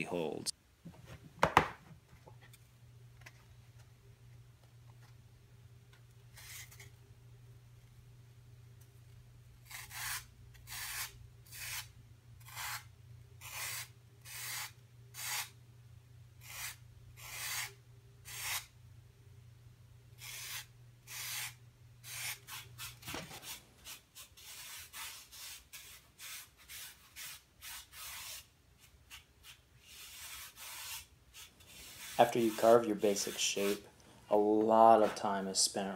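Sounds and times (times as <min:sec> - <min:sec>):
hand tool scraping foam: 0:20.2 - 0:33.8.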